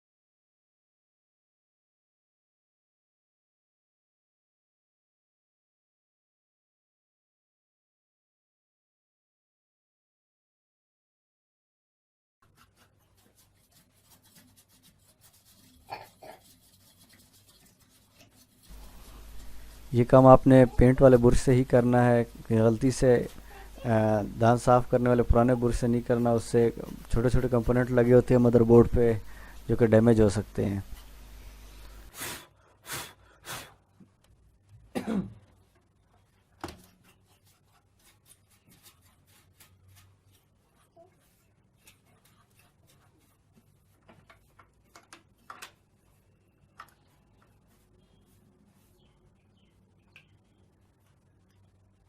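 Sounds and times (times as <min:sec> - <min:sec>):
paint brush bristles scratching: 0:12.4 - 0:32.3, 0:35.6 - 0:49.9
person breathy bursts: 0:23.4 - 0:23.8, 0:31.8 - 0:33.8.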